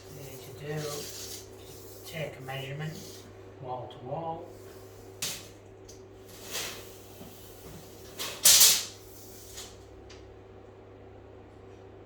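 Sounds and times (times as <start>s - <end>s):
tape measure scrapes and knocks: 6.4s - 9.8s.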